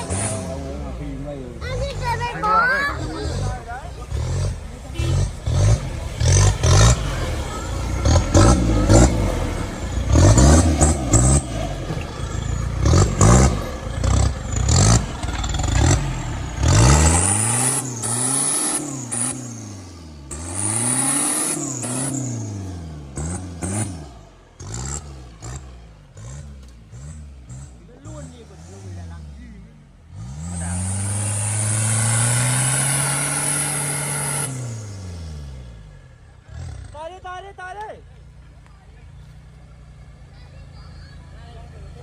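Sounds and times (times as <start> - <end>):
off-road vehicle engine revving: 0.0 - 42.0
clattering: 3.0 - 19.4.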